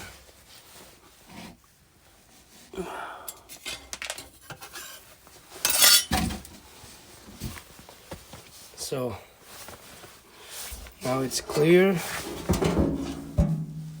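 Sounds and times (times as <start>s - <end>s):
metal parts clinking: 5.7s - 6.1s
metal rattle: 12.1s - 14.0s
dull thump: 12.2s - 14.0s.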